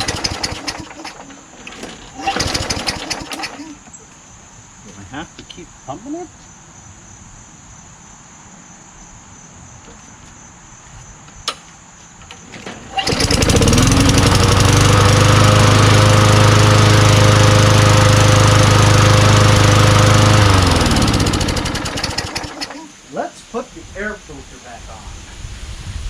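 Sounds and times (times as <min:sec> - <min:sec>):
lawn mower engine running: 0:00.0 - 0:04.0, 0:12.5 - 0:23.0.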